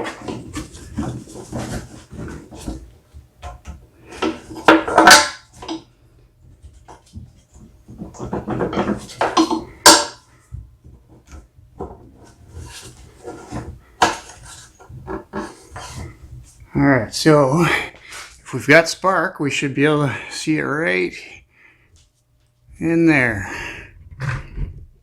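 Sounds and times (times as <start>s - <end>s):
parts clattering and rubbing: 0.0s - 16.7s.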